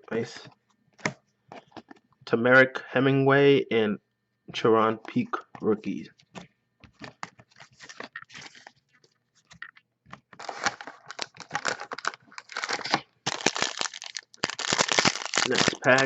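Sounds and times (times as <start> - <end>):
foil wrapper crinkling and tearing: 10.4 - 16.0.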